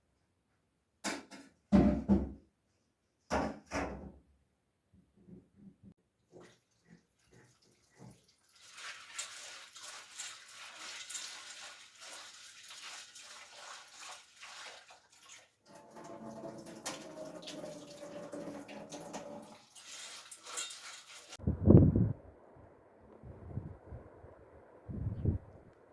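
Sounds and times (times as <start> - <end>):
water running and splashing: 6.3 - 21.4.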